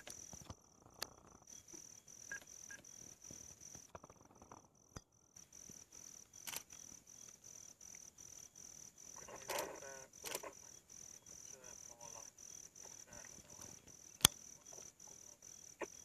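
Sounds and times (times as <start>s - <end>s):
faint insect chirping: 0.0s - 16.0s.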